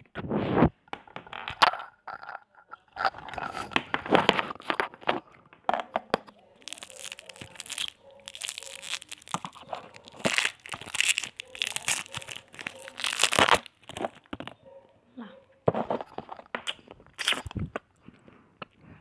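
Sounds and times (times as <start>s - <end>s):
plastic wrapper crinkling: 1.0s - 14.6s.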